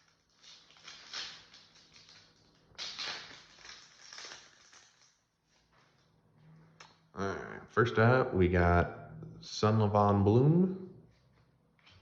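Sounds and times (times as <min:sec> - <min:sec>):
foil wrapper crinkling and tearing: 0:00.0 - 0:05.2.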